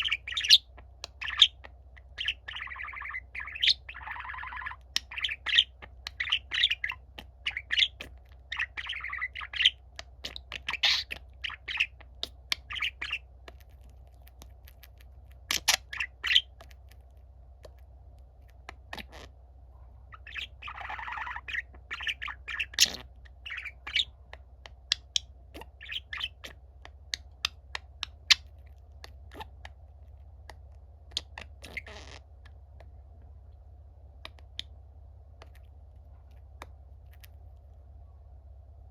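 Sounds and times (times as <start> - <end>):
budgerigar chirping: 0.0 - 17.0, 18.4 - 19.4, 20.0 - 32.5
steady low hum: 0.0 - 38.9.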